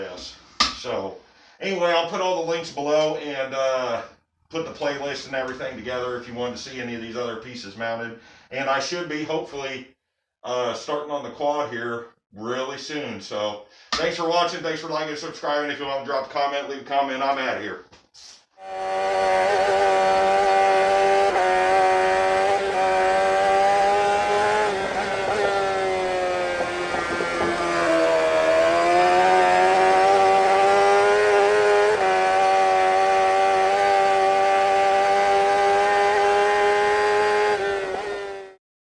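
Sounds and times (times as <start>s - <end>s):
engine running at high revs: 18.6s - 38.6s.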